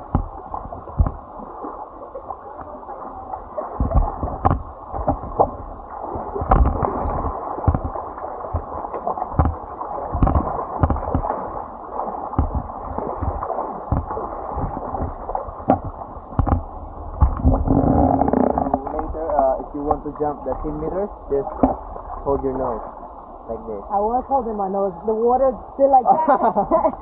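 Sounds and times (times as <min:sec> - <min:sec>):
knocks and bumps: 0:00.0 - 0:01.2, 0:03.8 - 0:05.6, 0:06.4 - 0:11.4, 0:12.4 - 0:20.0
muffled rushing splashing water: 0:00.0 - 0:27.0.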